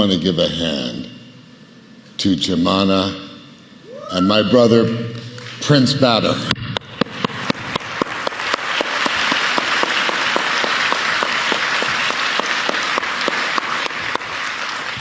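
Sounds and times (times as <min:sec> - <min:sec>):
audience applauding: 0:06.9 - 0:15.0.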